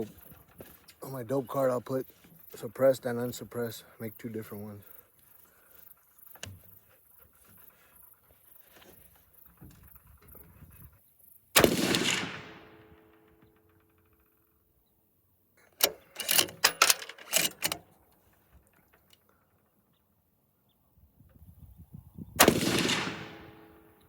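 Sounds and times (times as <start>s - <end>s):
rifle shot: 11.6s - 13.4s, 22.4s - 24.0s
rifle bolt clicking and clacking: 15.6s - 18.0s.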